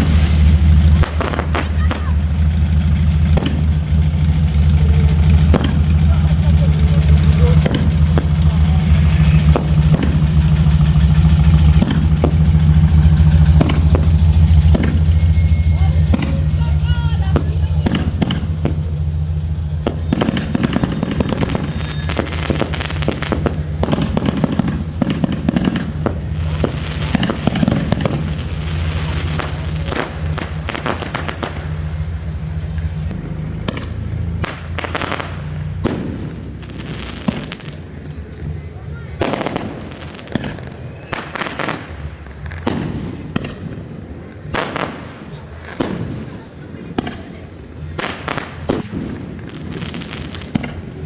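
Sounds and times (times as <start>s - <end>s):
steady low hum: 0.0s - 36.4s
low engine drone: 0.0s - 39.0s
distant firework bangs: 0.0s - 51.0s.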